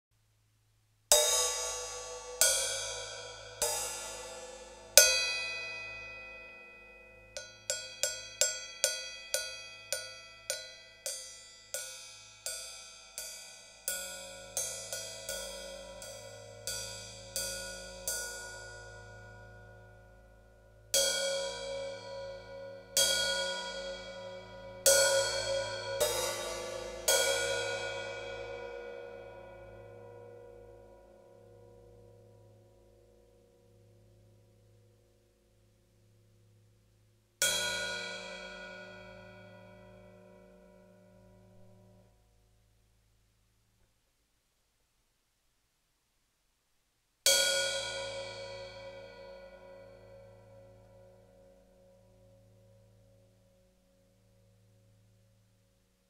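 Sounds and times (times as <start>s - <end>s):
hi-hat cymbal hits: 1.1s - 32.8s, 47.3s - 51.4s.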